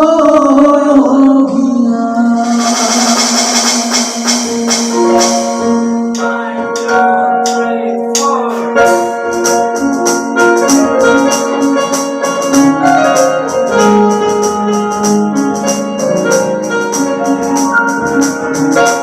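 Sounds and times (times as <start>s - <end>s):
person singing: 0.0s - 5.3s, 6.1s - 9.3s
electronic keyboard melody: 0.0s - 19.0s.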